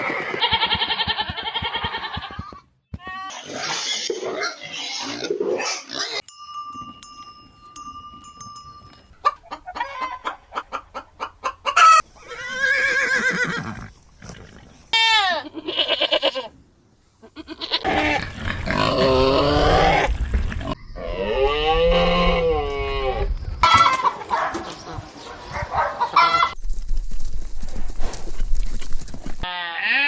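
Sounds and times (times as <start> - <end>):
chickens clucking: 9.0 - 12.1, 23.6 - 26.6.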